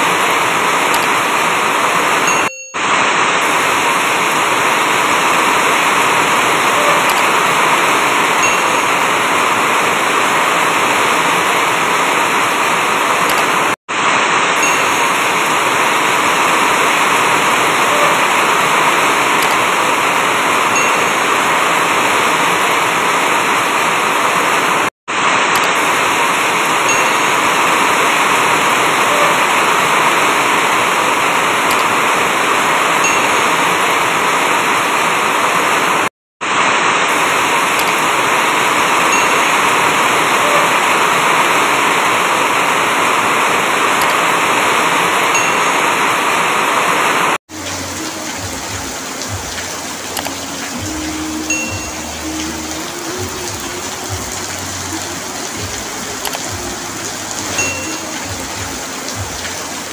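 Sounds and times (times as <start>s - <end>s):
heavy rain on a roof: 0.0s - 59.9s.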